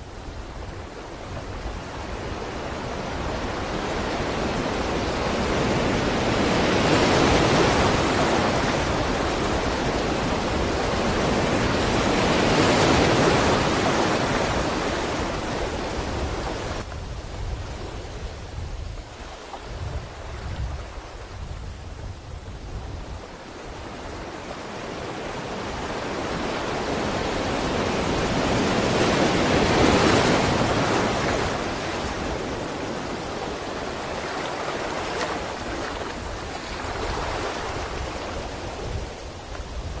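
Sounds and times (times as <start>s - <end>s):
sea waves surging on shore: 0.0s - 40.0s.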